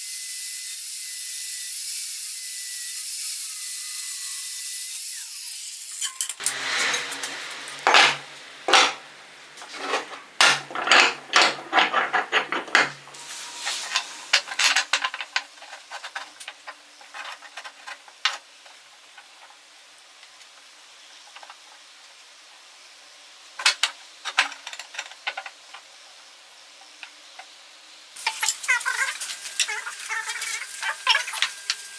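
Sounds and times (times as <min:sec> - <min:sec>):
metal clanking and scraping: 0:06.0 - 0:18.0
steady hiss: 0:13.1 - 0:24.5.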